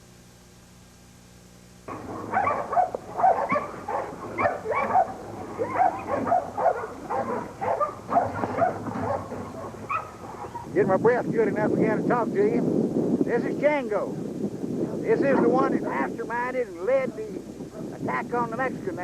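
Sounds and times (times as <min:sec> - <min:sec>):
dog barking: 0:01.9 - 0:10.7, 0:15.3 - 0:15.6.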